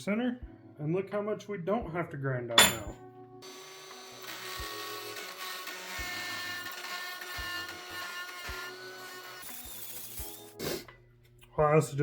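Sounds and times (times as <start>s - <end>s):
die grinder grinding steel: 3.5s - 10.5s.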